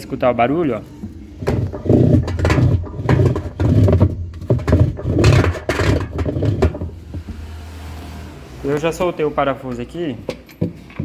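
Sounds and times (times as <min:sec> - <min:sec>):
washing machine knocking and grinding: 0:01.4 - 0:07.5.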